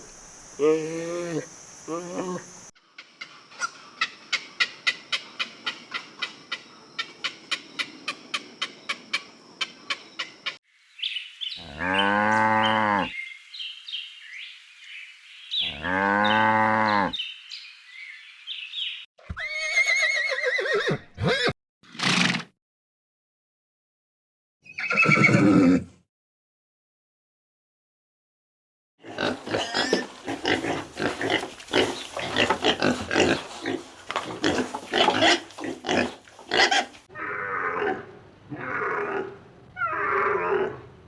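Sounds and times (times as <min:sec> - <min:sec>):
faint high hiss: 0:00.0 - 0:02.7
cow mooing: 0:11.6 - 0:13.1, 0:15.7 - 0:17.2
birds chirping: 0:29.3 - 0:37.1.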